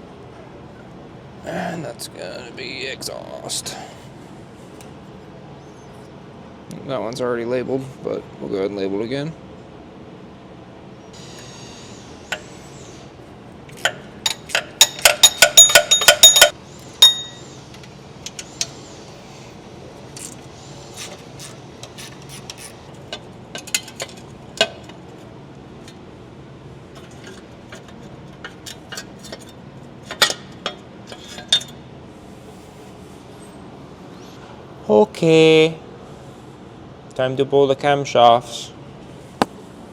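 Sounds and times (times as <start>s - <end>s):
metal tools clinking: 13.7s - 17.6s.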